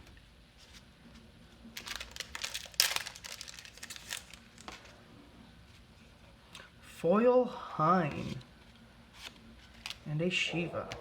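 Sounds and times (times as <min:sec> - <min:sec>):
foil wrapper tearing and crinkling: 0:01.8 - 0:04.9.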